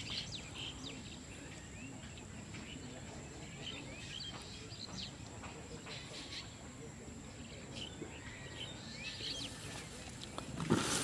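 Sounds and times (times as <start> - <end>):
bird chirps: 0.0 - 6.6.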